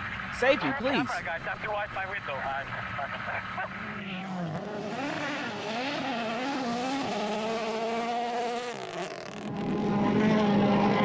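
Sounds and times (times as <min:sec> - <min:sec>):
rally car engine revving: 0:02.8 - 0:11.0.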